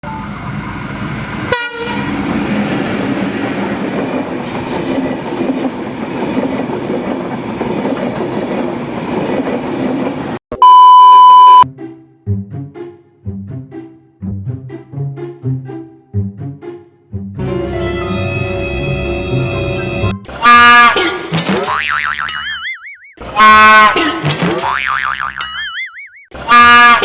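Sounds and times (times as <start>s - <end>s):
train rumble and wheel clatter: 0.0s - 10.4s
train horn: 1.5s - 2.2s, 17.5s - 21.0s, 26.5s - 27.0s
loud steady beep tone: 10.5s - 11.6s.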